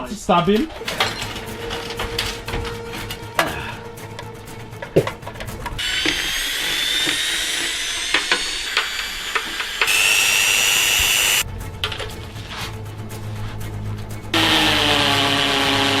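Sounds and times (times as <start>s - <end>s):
power drill whining: 1.0s - 11.4s, 14.4s - 16.0s.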